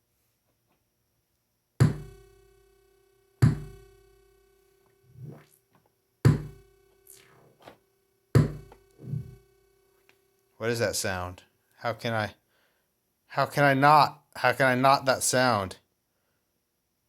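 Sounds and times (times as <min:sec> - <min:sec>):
synthesized kick drum hits: 0:01.8 - 0:02.4, 0:03.4 - 0:04.0, 0:06.3 - 0:06.9, 0:08.4 - 0:09.5
buzzy tone: 0:01.8 - 0:05.7, 0:06.3 - 0:07.8, 0:08.4 - 0:10.2.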